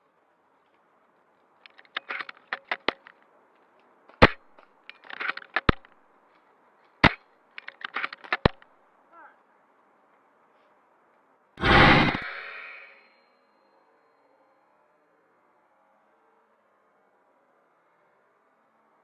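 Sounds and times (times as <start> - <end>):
airsoft gun single cracks: 4.2 - 4.5, 7.0 - 8.6, 11.6 - 13.0
airsoft gun bursts: 11.6 - 12.9.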